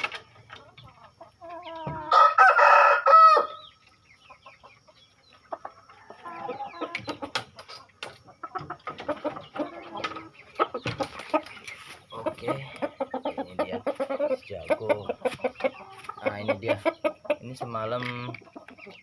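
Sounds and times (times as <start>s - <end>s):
chickens clucking: 0.0s - 19.0s
chickens scuffling: 0.0s - 19.0s
rooster crowing: 1.9s - 3.6s.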